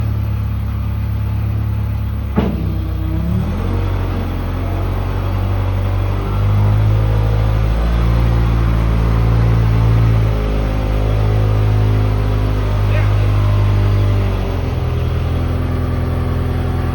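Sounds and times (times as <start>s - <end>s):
loader diesel engine running: 0.0s - 16.9s.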